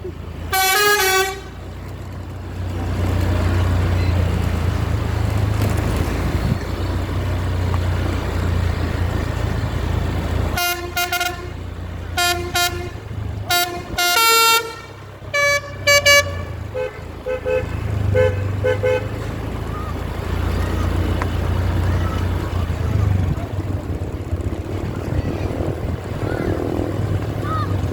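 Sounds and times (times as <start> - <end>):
low engine rumble: 0.0 - 27.9
musical bus horn toots: 0.5 - 1.7, 10.5 - 19.3.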